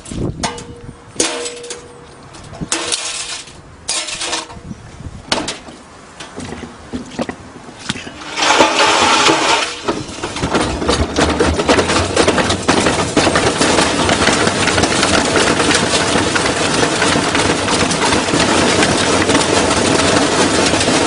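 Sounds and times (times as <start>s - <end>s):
clattering crash: 0.0s - 4.6s, 8.0s - 21.0s
washing machine being smashed: 0.4s - 1.9s, 2.7s - 4.5s, 8.1s - 21.0s.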